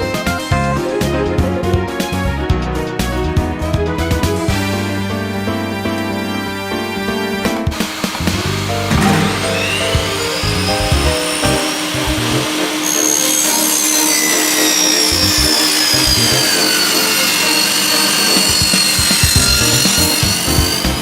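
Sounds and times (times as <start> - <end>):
power tool cutting wood: 7.7 - 21.0.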